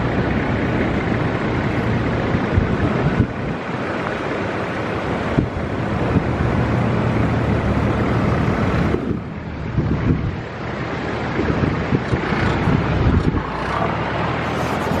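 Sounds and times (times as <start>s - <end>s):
vehicle engine and tyre noise: 0.0s - 15.0s.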